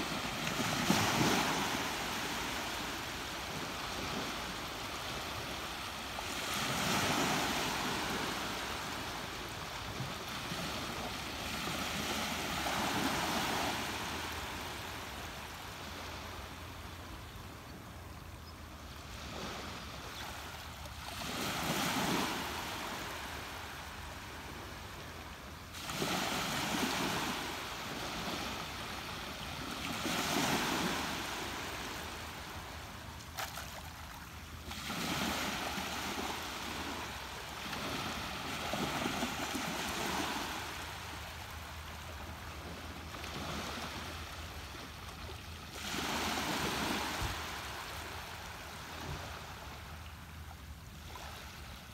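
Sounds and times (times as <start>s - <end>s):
ocean waves breaking: 0.0s - 16.9s, 21.0s - 49.8s.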